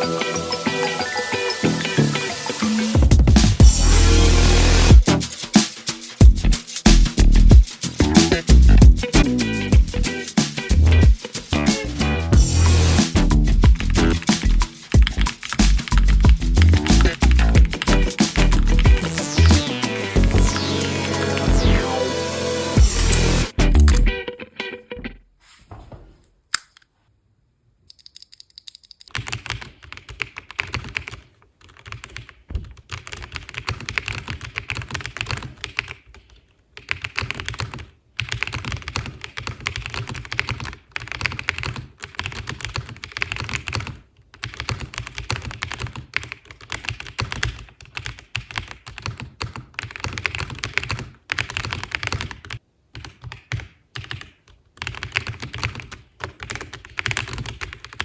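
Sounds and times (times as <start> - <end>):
mechanical keyboard typing: 13.7 - 21.7, 27.9 - 58.0.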